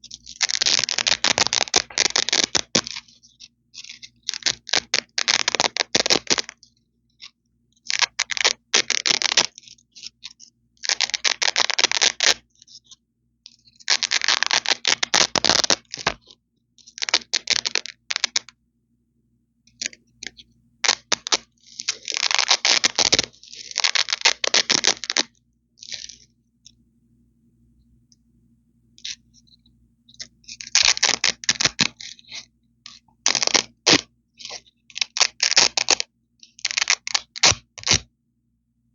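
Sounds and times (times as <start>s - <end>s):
velcro strips ripping apart: 0.2s - 7.3s, 7.9s - 12.4s, 13.6s - 18.5s, 20.8s - 26.2s, 30.4s - 38.1s.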